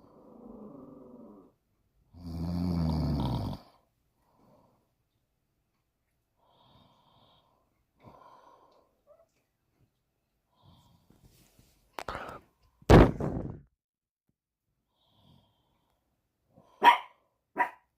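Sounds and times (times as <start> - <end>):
woman snoring: 0.0 - 3.8.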